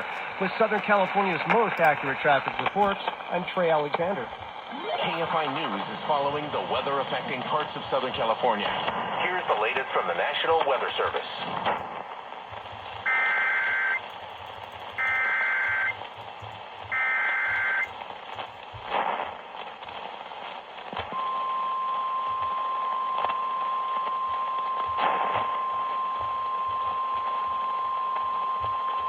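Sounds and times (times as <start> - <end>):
radio static: 0.0 - 21.2
data bursts: 12.8 - 16.1, 16.9 - 17.9.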